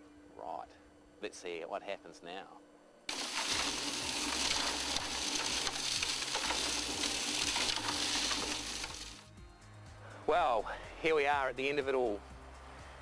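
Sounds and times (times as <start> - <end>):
concrete mixer churning and sloshing: 3.1 - 9.2.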